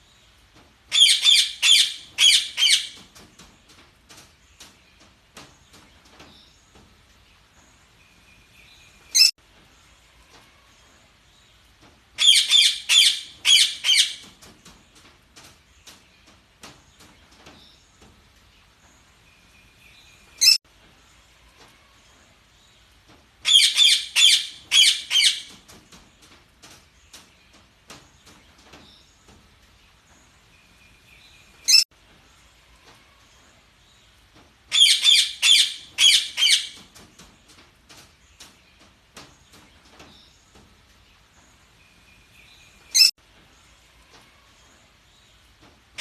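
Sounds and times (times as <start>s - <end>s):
budgerigars chirping: 12.2s - 14.2s, 34.7s - 36.8s.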